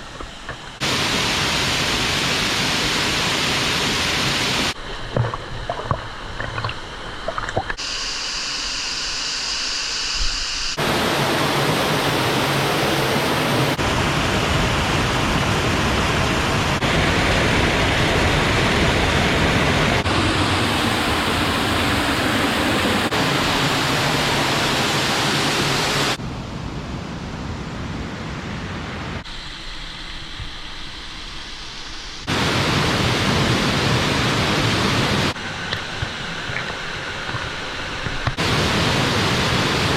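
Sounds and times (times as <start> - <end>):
waterfall rushing: 0.7 - 6.9, 10.8 - 26.2, 31.8 - 39.9.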